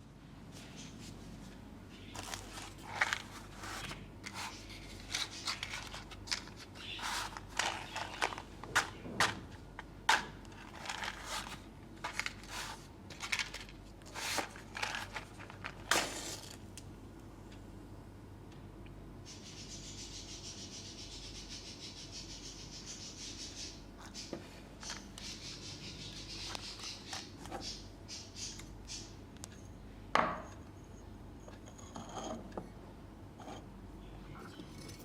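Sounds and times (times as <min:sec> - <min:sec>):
scratchy handling noises: 0:00.6 - 0:16.6.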